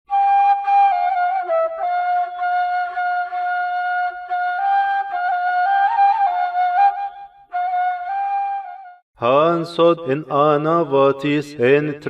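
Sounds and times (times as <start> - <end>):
flute playing slow melody: 0.1 - 9.0.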